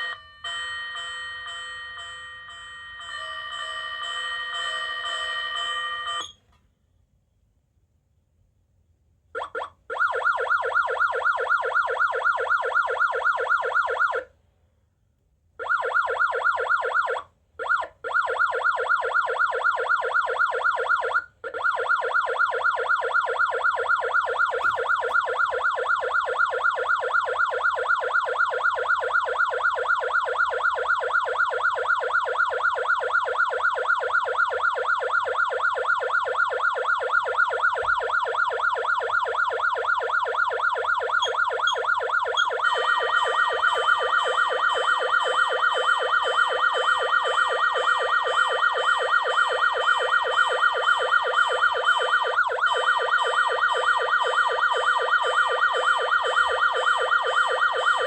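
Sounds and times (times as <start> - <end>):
electronic siren sweeping: 18.4 - 58.0.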